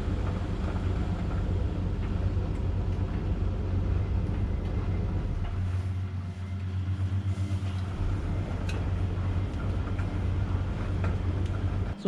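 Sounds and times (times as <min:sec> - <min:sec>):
laundry machine humming: 0:00.0 - 0:12.0.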